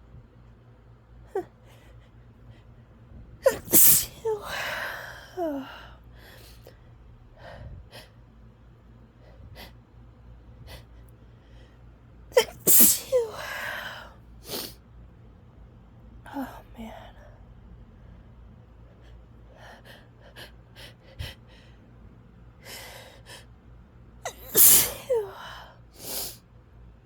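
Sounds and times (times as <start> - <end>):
woman sneezing: 3.4 - 5.7, 12.4 - 13.9, 24.3 - 26.4.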